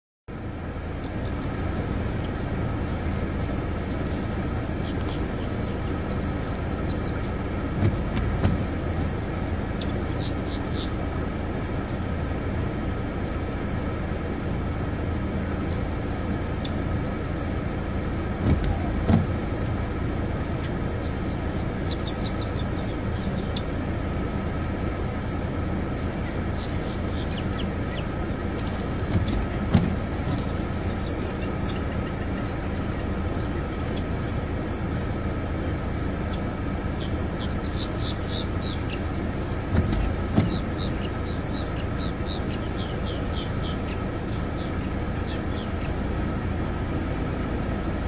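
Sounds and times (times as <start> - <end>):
low rumbling background noise: 0.3 - 48.0
short knocks: 18.4 - 19.4, 39.7 - 40.7.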